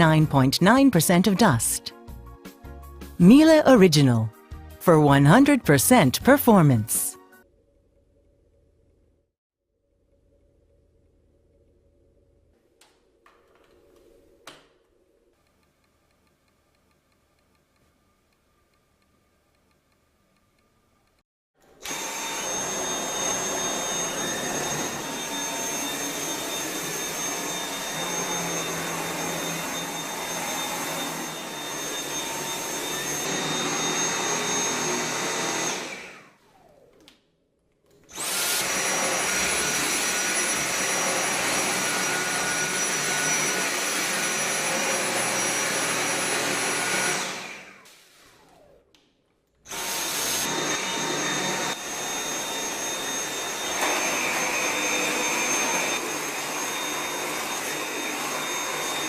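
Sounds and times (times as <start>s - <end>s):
vacuum cleaner motor running: 21.6s - 37.0s, 38.0s - 48.8s, 49.7s - 59.0s.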